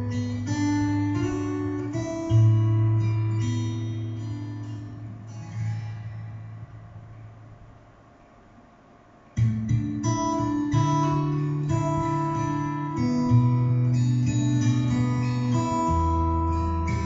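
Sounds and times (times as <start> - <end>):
song with strummed acoustic guitar: 0.0 - 7.8, 9.2 - 17.0.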